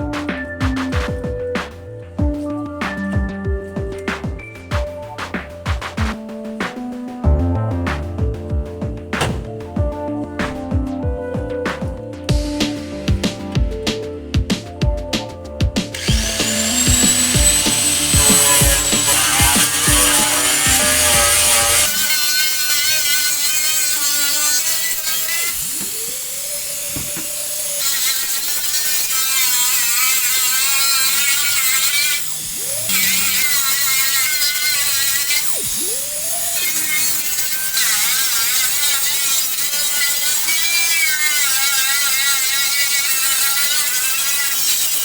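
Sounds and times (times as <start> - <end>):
background music: 0.0 - 24.9
small power tool whirring: 16.0 - 45.0.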